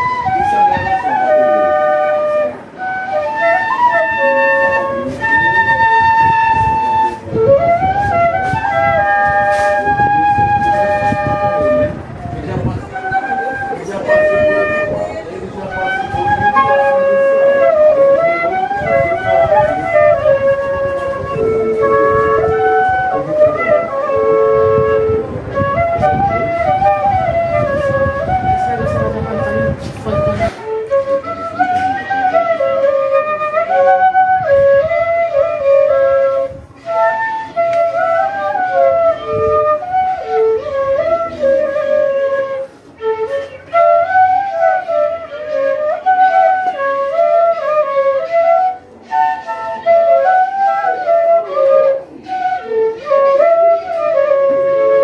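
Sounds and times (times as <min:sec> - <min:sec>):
cane fifes playing melody: 0:00.0 - 0:55.0
low drum accompaniment: 0:04.5 - 0:33.5.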